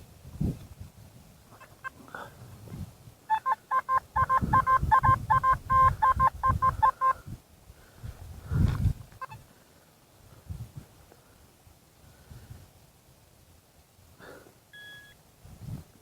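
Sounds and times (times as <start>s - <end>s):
metal detector beeping: 3.3s - 7.2s, 14.8s - 15.2s
wind buffeting on microphone: 4.1s - 7.4s, 8.0s - 9.4s.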